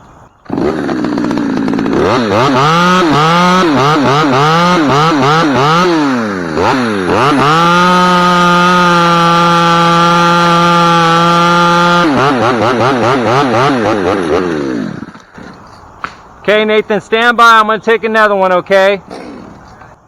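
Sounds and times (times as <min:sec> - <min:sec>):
chainsaw revving and cutting: 0:00.4 - 0:15.7.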